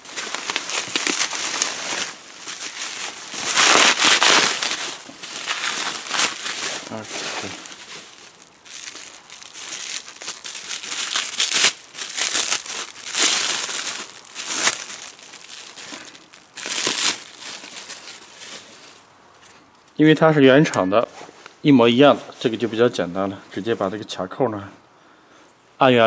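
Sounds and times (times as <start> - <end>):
packaging crinkling and rustling: 0.0 - 19.1.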